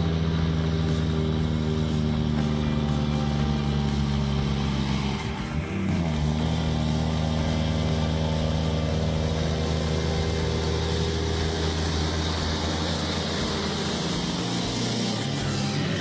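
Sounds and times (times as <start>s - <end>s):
heavy engine running steadily: 0.0s - 16.0s.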